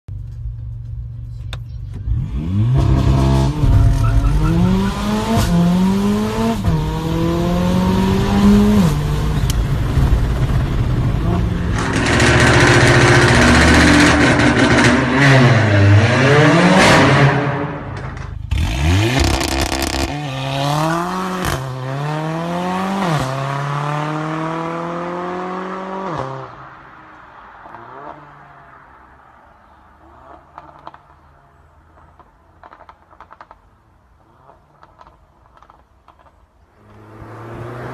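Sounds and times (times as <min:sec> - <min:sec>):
exhaust crackles: 0:00.1 - 0:20.2
car engine revving: 0:01.9 - 0:29.2, 0:36.8 - 0:37.9.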